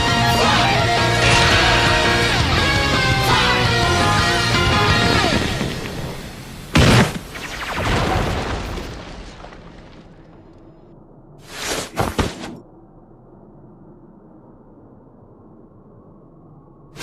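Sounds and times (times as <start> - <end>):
rumbling swell: 0.4 - 6.7
sharp hits: 0.9 - 5.6
loud boom: 1.2 - 4.1.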